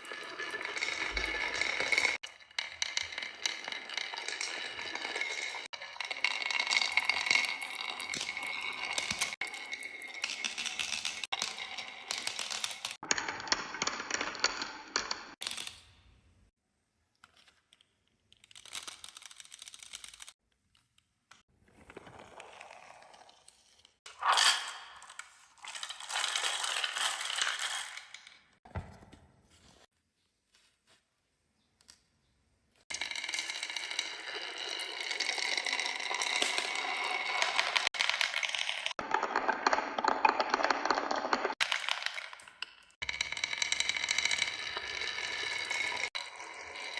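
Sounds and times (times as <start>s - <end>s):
marbles clattering down track: 0.0s - 15.7s, 24.2s - 28.6s, 32.9s - 46.9s.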